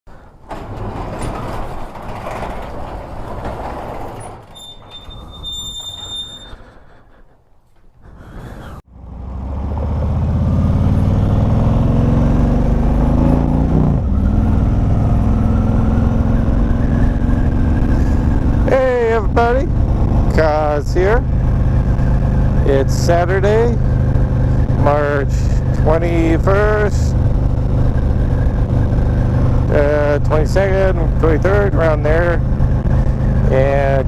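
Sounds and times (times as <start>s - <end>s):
motorcycle engine running: 8.9s - 34.0s.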